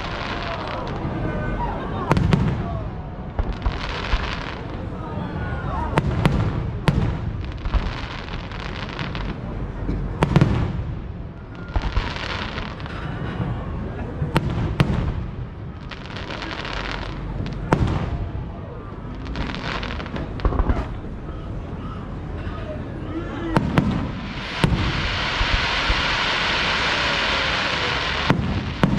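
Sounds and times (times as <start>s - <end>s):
firework crackling: 0.0s - 21.3s, 23.5s - 28.9s.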